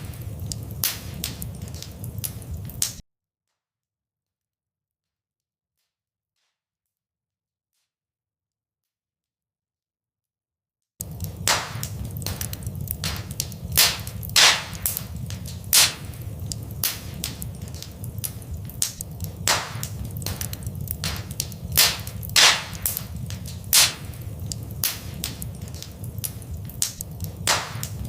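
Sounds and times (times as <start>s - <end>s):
low rumble: 0.0s - 3.0s, 11.0s - 28.0s
wood fire crackling: 0.0s - 3.0s, 11.0s - 28.0s.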